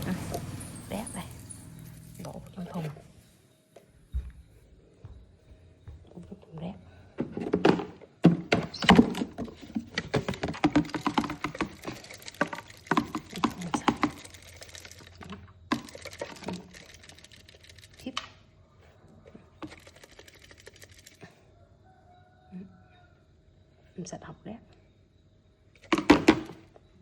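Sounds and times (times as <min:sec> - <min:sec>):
plastic parts clicking: 0:08.6 - 0:18.3.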